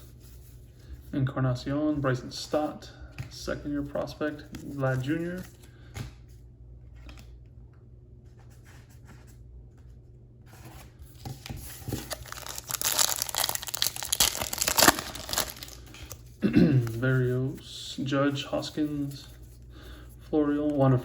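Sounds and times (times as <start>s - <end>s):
foil wrapper tearing and crinkling: 11.6s - 16.3s.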